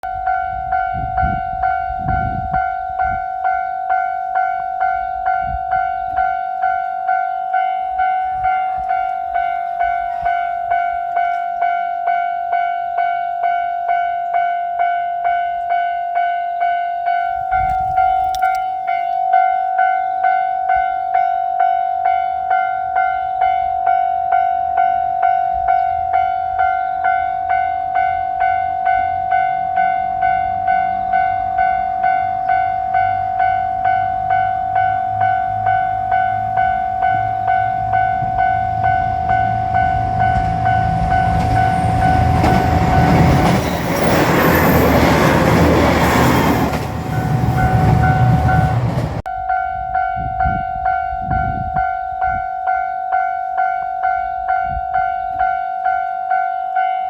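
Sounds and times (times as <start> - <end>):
railroad crossing alarm ringing: 0.0 - 57.0
low rumbles: 34.1 - 50.6.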